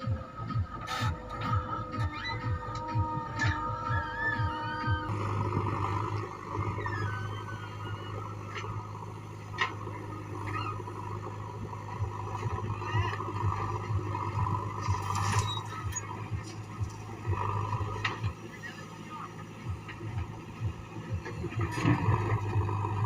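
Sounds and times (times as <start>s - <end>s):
heavy diesel engine running: 0.0s - 23.0s.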